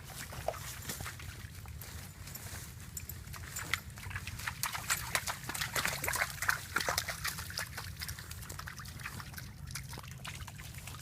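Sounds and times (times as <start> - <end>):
creek water trickling and splashing: 0.0 - 11.0.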